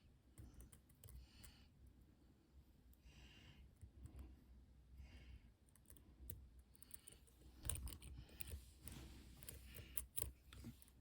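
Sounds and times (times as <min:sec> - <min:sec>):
soft breath: 0:00.4 - 0:11.0
lock pick clicks and scrapes: 0:06.7 - 0:11.0.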